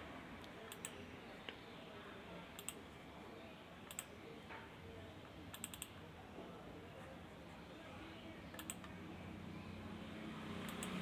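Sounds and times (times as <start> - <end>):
computer mouse double-clicks: 5.5 - 6.0, 8.6 - 8.9, 10.7 - 11.0.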